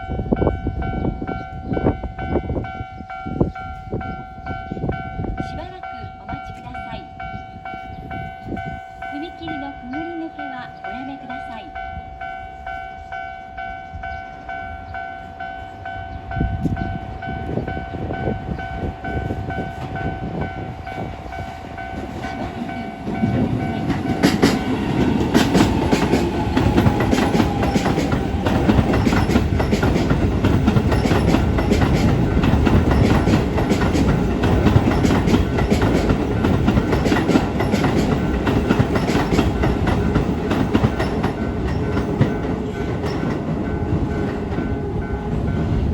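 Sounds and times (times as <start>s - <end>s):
train wheels clattering: 14.6s - 45.9s.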